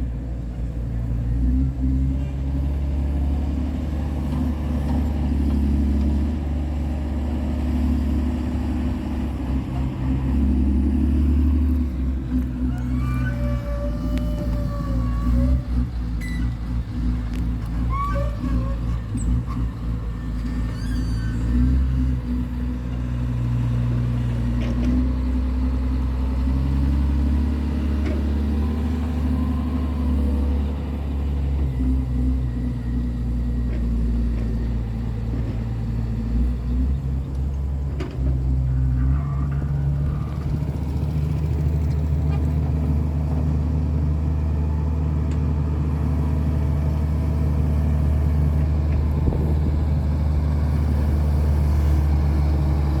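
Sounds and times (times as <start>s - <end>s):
diesel engine running: 0.0s - 53.0s.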